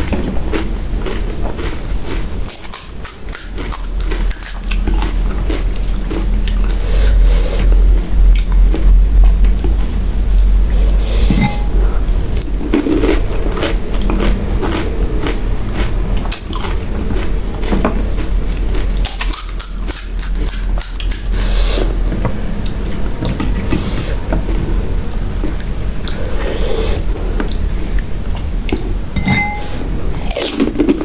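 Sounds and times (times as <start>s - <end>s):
crunching of crisp shells: 0.0s - 21.4s.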